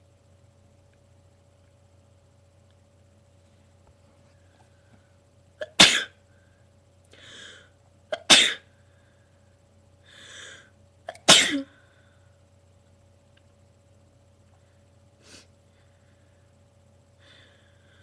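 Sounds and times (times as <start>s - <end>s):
person sneezing: 5.6s - 6.2s, 8.1s - 8.7s, 11.1s - 11.8s
breathy inhale: 6.4s - 7.8s, 10.0s - 10.8s, 17.2s - 18.0s.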